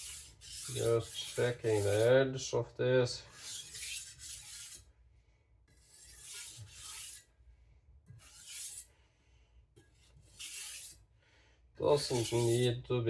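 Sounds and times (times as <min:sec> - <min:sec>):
cleaver blade scraping: 0:00.0 - 0:02.2, 0:03.3 - 0:04.9, 0:05.8 - 0:07.3, 0:08.1 - 0:08.9, 0:09.9 - 0:11.0, 0:11.9 - 0:12.8.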